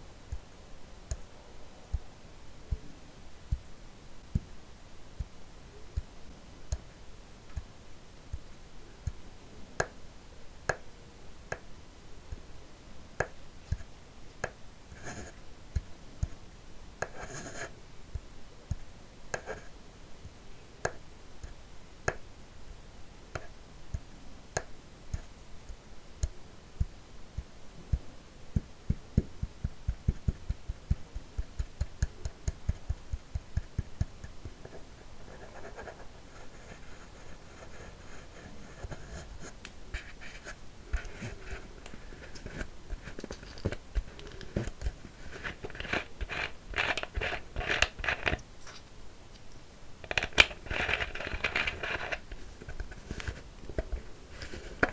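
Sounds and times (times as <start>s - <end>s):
plastic bottle crinkling: 45.4s - 48.8s, 50.0s - 53.4s.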